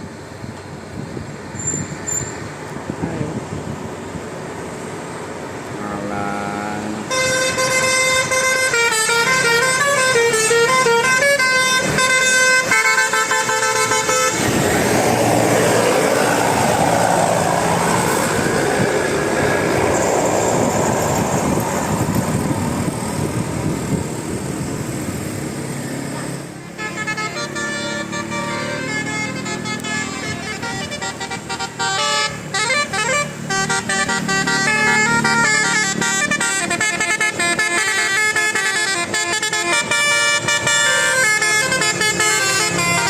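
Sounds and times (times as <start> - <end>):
bus horn playing melody: 7.0 - 15.5, 26.2 - 43.0
loud rushing noise: 14.2 - 26.5.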